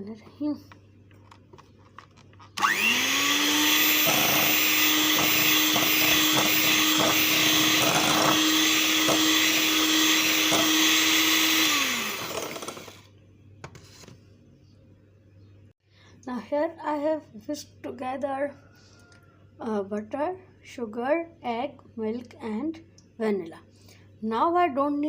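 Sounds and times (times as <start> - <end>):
electric hand mixer whining: 2.6 - 13.1.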